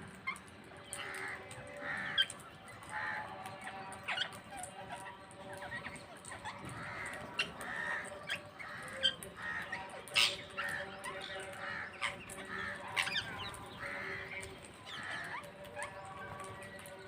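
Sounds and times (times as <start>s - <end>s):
parrots squawking and chattering: 0.0s - 17.0s.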